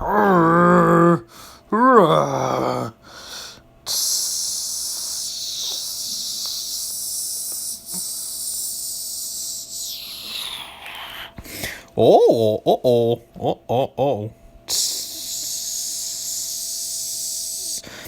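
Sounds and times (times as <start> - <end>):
long steady hiss: 3.0 - 12.0, 14.7 - 18.0.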